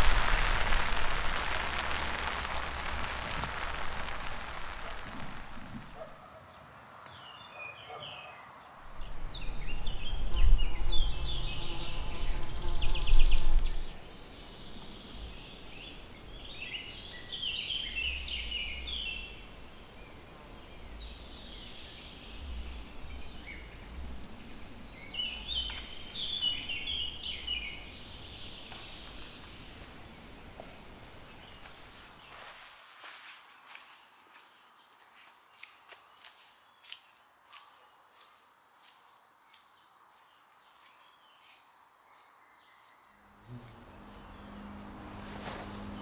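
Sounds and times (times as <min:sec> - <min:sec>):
high insect drone: 0:00.0 - 0:06.0, 0:09.0 - 0:32.7, 0:43.2 - 0:46.0
birds chirping: 0:39.8 - 0:45.0.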